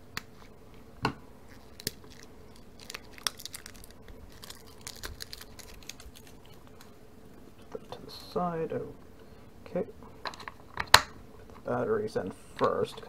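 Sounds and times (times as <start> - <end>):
faint steady hum: 0.0 - 13.0
plastic clicks and crinkles: 1.5 - 6.9.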